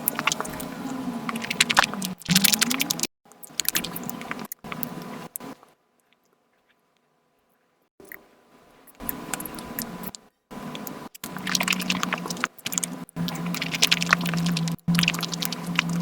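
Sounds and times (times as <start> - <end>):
wet chewing clicks and squishes: 0.0 - 6.8, 8.9 - 16.0
steady low tone: 11.6 - 16.0.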